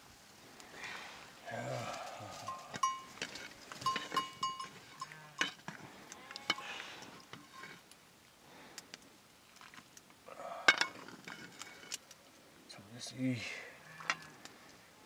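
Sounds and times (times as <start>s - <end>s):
metal bell-like rings: 2.5s - 3.2s, 3.8s - 5.2s.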